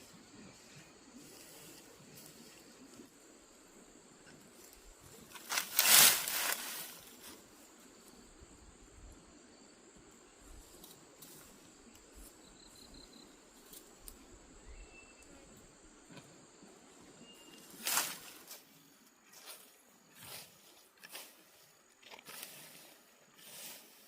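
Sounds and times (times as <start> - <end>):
rustling swish of weeds: 5.2 - 7.4, 17.6 - 18.7, 22.3 - 24.0
faint high chirps: 14.6 - 15.5, 17.2 - 17.8.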